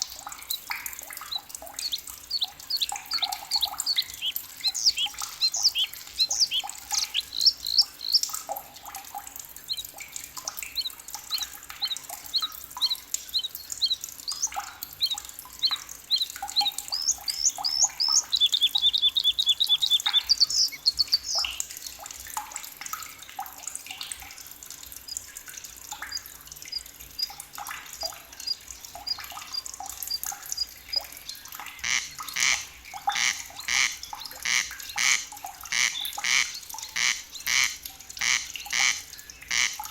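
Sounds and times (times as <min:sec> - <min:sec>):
thin high bird pips: 0:00.0 - 0:08.6, 0:09.6 - 0:21.7, 0:26.1 - 0:31.1
forest birds singing: 0:00.4 - 0:08.4, 0:10.6 - 0:21.7
bird trilling: 0:01.3 - 0:08.3, 0:10.7 - 0:21.6
loud bird calls: 0:01.8 - 0:08.3, 0:10.8 - 0:21.6.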